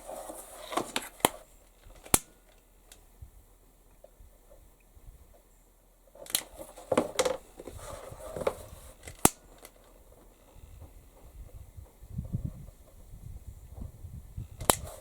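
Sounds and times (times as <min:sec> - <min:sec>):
handling rustle: 0:00.0 - 0:03.0, 0:06.1 - 0:12.0
sharp click: 0:14.6 - 0:15.0.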